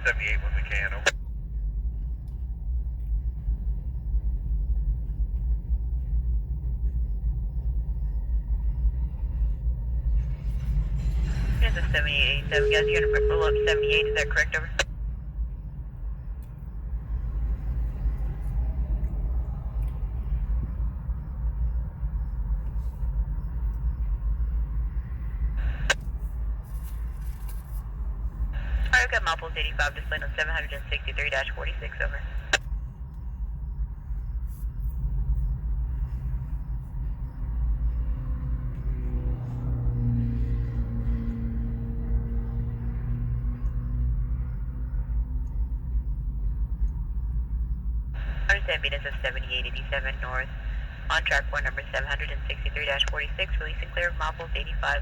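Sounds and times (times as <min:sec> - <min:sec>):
freight train rumbling: 0:00.0 - 0:55.0
radio static burst with click: 0:28.6 - 0:32.6, 0:48.2 - 0:55.0.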